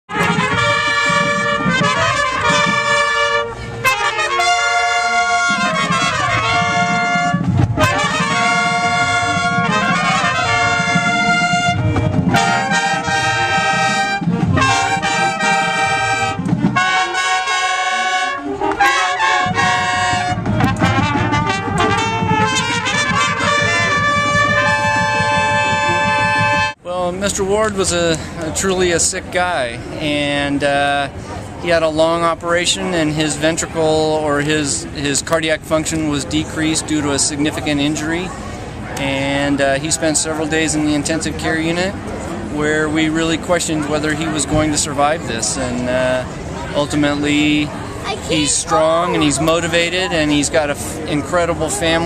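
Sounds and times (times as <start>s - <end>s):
marching band drums: 0.1s - 26.8s
trumpets and trombones: 0.1s - 26.8s.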